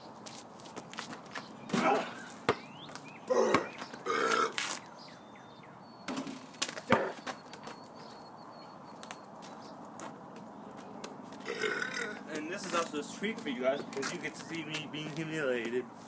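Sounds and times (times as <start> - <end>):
basketball bouncing: 1.7 - 2.7, 3.4 - 3.9, 6.1 - 7.3
person burping: 3.3 - 4.6, 11.4 - 12.3.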